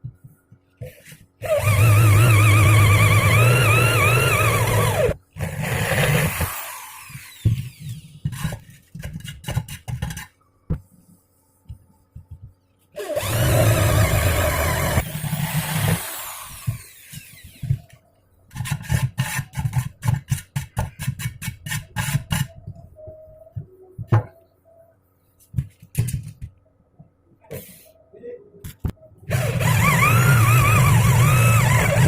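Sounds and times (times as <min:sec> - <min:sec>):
power tool running: 0:01.4 - 0:08.0, 0:13.0 - 0:17.6, 0:29.3 - 0:32.0.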